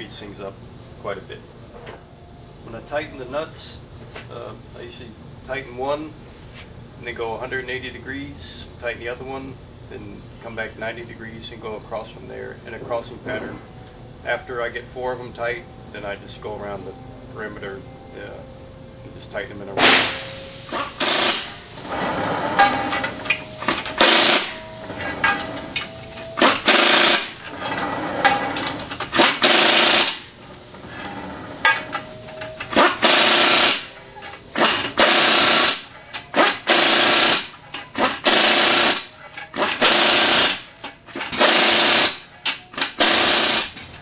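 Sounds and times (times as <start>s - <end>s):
pneumatic wrench rattling bursts: 20.1s - 24.6s, 25.2s - 30.3s, 30.9s - 43.9s.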